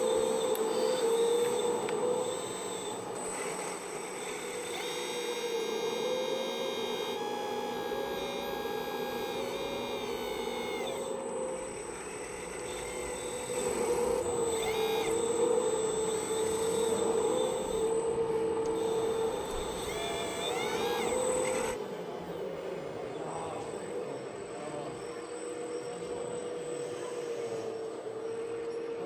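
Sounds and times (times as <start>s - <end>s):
electric motors whining: 0.0s - 29.0s.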